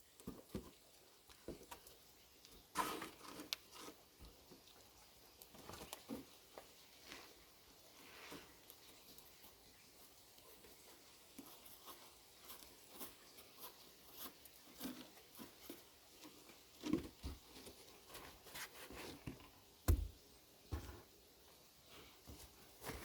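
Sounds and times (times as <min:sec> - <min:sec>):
awl scraping and creaking in wood: 0:02.7 - 0:04.1, 0:07.0 - 0:19.6.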